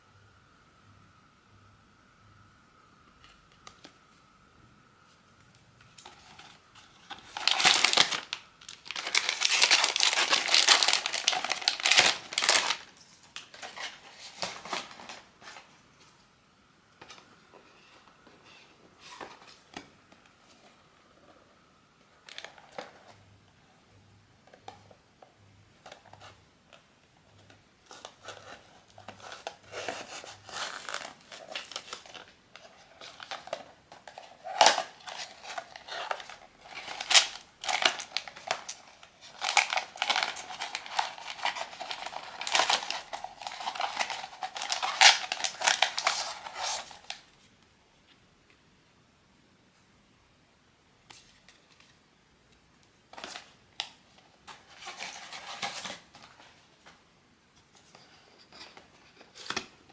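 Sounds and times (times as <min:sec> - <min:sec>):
wrapper crinkling and tearing: 0:06.0 - 0:15.3, 0:28.0 - 0:47.3.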